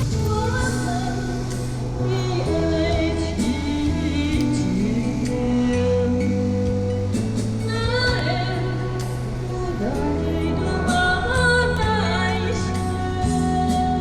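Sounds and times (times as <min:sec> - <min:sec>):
sustained chords: 0:00.0 - 0:14.0
person singing: 0:00.1 - 0:06.8, 0:07.7 - 0:14.0.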